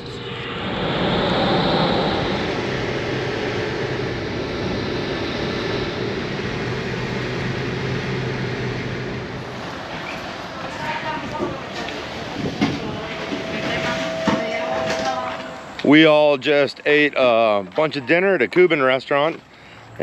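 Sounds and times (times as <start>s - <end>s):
rumble and hiss of moving vehicle: 0.0s - 14.6s
low engine hum: 0.0s - 16.0s.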